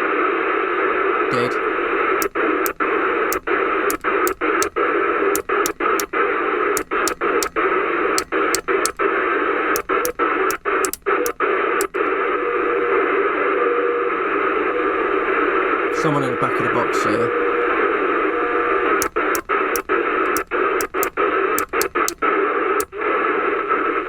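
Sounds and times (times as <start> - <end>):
radio channel click: 1.3 - 6.2, 6.8 - 9.1, 9.7 - 12.1, 18.8 - 23.0.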